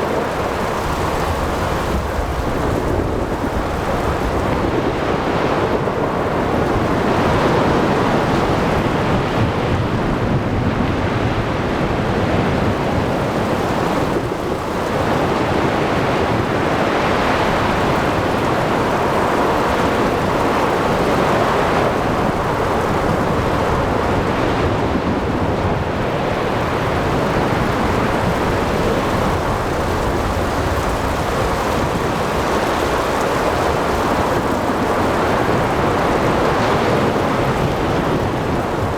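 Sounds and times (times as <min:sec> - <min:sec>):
rain: 0:00.0 - 0:38.9
wind: 0:00.0 - 0:38.9
waves breaking: 0:11.2 - 0:38.9.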